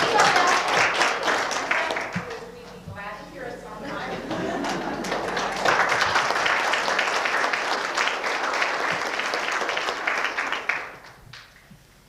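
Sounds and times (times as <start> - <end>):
audience applause: 0.0 - 2.5, 3.9 - 11.2.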